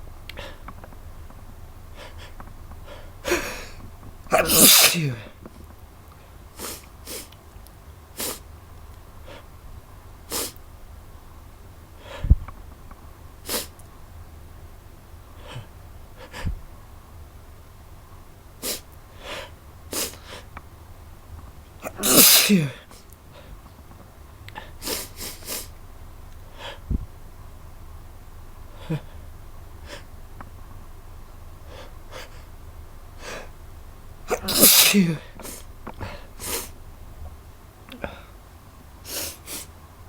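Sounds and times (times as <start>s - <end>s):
person sneezing: 3.2s - 5.4s, 21.8s - 23.0s, 34.3s - 36.7s, 39.1s - 39.7s.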